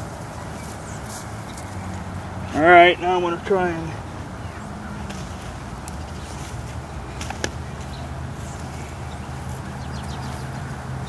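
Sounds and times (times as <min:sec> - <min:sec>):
burlap and twine handling: 0:05.0 - 0:09.7.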